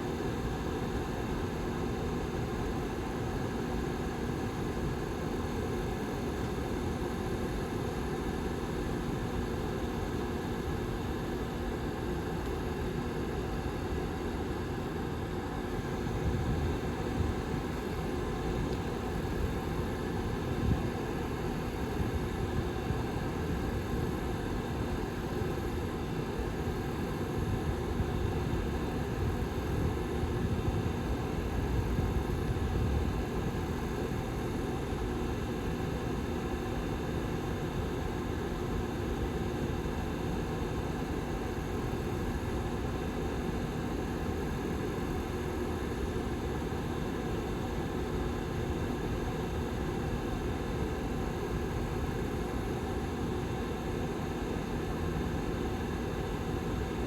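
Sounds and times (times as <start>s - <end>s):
heater fan rushing air: 4.0s - 57.0s.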